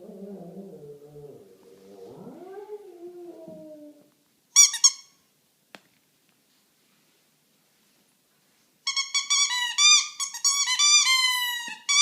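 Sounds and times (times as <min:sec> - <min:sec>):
dog whining: 0:00.0 - 0:04.1.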